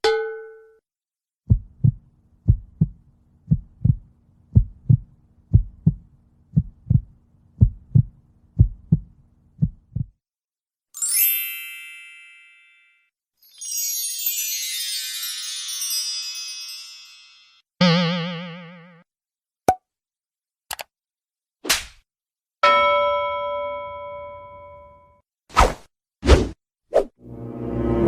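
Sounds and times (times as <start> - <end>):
heartbeat thumps: 1.4 - 10.2
shimmering chime: 11.0 - 17.6.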